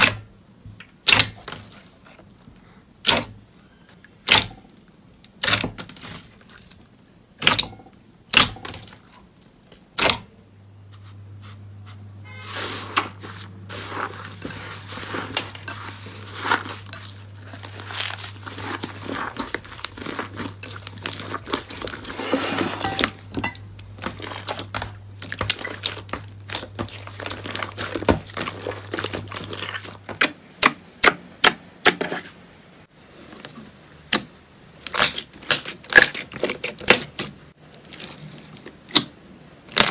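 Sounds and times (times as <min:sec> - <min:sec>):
slime crackling and crunching: 0:13.7 - 0:22.2, 0:23.9 - 0:30.1, 0:34.9 - 0:39.0.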